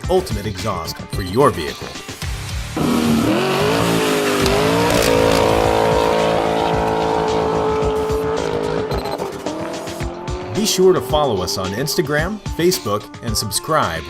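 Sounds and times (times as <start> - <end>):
car engine revving: 2.7 - 12.2.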